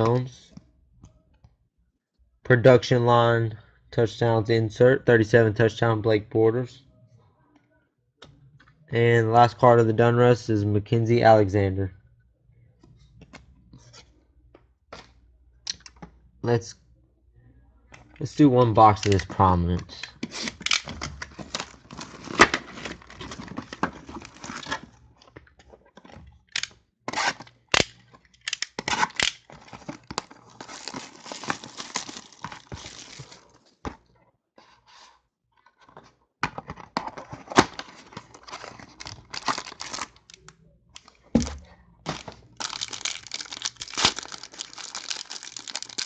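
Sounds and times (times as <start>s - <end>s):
plastic wrap tearing: 28.8s - 33.5s, 38.1s - 41.1s, 42.1s - 46.0s.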